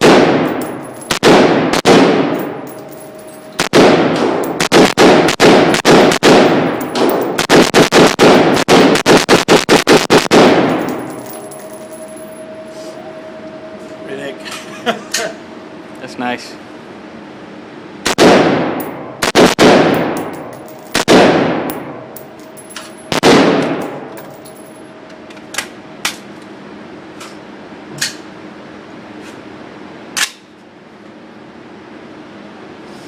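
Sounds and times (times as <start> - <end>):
rifle shots echoing indoors: 0.0 - 2.6, 3.5 - 11.3, 18.0 - 21.9, 23.1 - 24.0.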